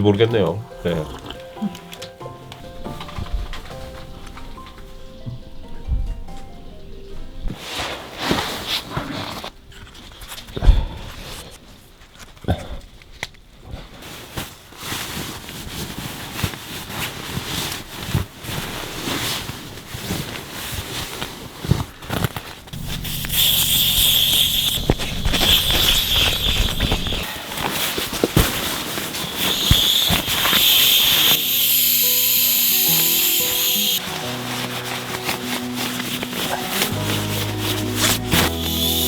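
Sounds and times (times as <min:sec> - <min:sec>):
rustling: 0:13.8 - 0:39.0
low hum: 0:22.8 - 0:27.3
steady hiss: 0:22.8 - 0:39.0.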